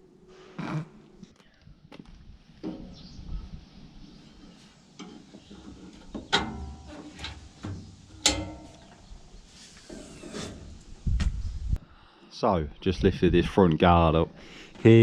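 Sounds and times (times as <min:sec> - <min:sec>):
metal clanks and rattles: 0:05.0 - 0:09.3.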